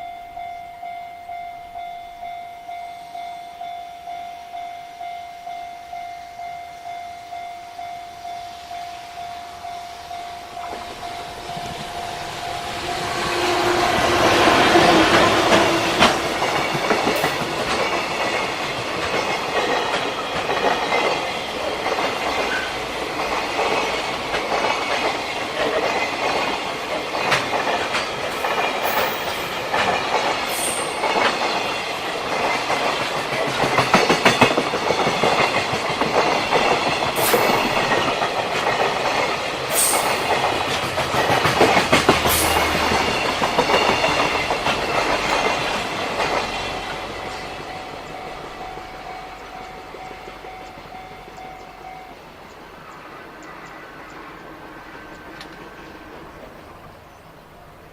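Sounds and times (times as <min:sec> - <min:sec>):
train wheels rolling on rails: 0:05.0 - 0:57.9
wheels clacking over rail joints: 0:10.5 - 0:52.0.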